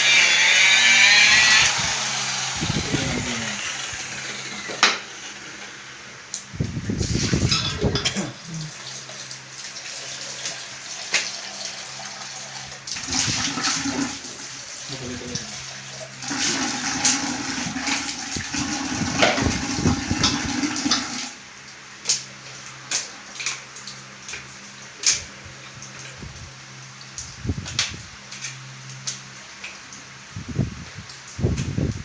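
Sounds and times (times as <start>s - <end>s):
water rushing: 0.0s - 5.9s
motor hum: 0.0s - 8.8s.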